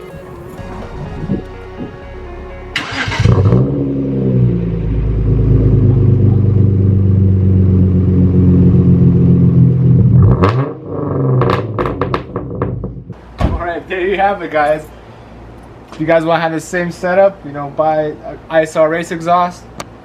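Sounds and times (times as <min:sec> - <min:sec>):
car engine starting and idling: 0:00.0 - 0:13.2.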